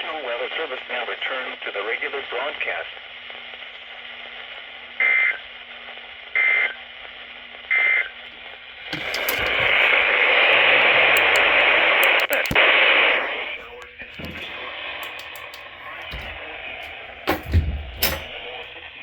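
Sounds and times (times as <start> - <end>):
radio static hiss with crackles: 0.0 - 8.2.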